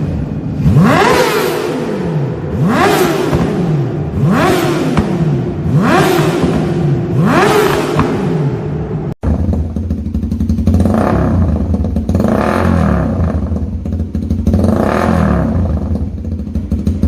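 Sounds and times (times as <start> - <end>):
motorcycle engine idling and revving: 0.0 - 17.0.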